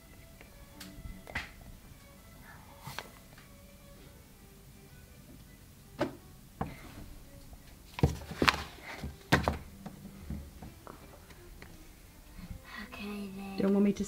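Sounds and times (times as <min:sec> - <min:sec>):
knocks and thuds: 0:08.0 - 0:10.8.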